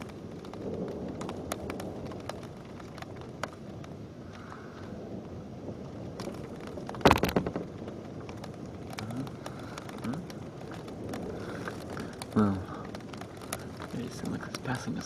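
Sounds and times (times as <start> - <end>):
heavy rain hissing: 0.0 - 15.0
raindrops tapping: 0.0 - 15.0
loud clatter of quick hits: 6.2 - 7.8.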